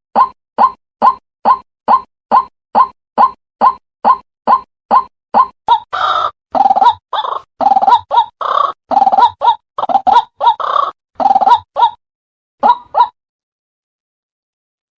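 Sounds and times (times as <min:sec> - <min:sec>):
waterhen calling: 0:05.7 - 0:11.9.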